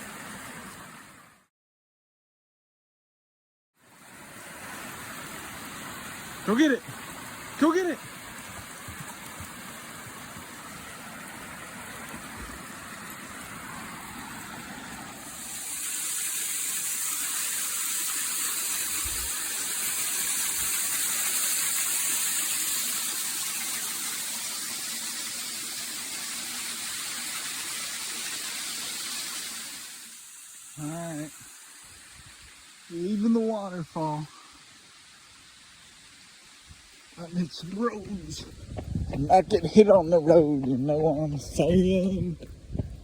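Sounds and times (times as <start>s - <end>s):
waterfall rushing: 4.0s - 26.1s, 29.2s - 38.7s.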